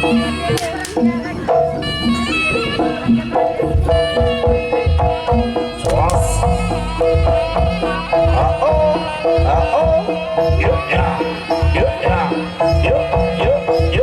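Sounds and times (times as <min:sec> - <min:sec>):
wavering melody line: 0:05.2 - 0:10.2.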